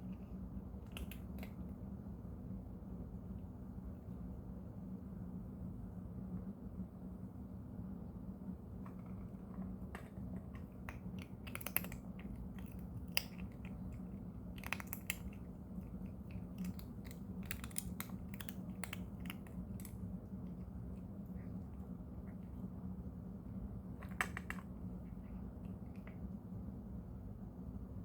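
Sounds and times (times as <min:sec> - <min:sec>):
cat crunching treats: 0:00.8 - 0:01.7, 0:09.1 - 0:22.5.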